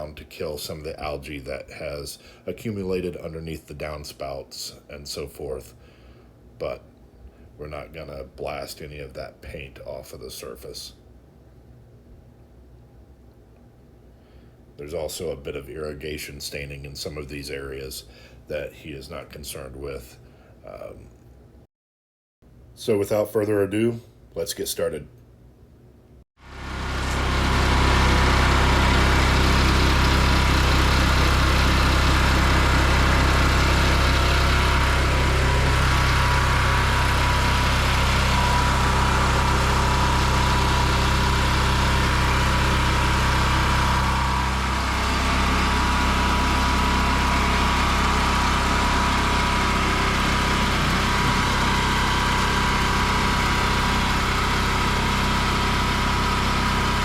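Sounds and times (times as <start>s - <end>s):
pressure washer engine running: 26.4s - 57.0s.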